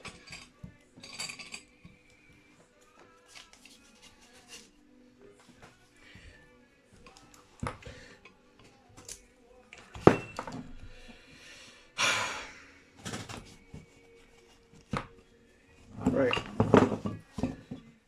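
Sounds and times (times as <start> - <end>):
clamps and tools clattering: 0.0 - 1.8, 9.8 - 10.8, 15.9 - 17.9.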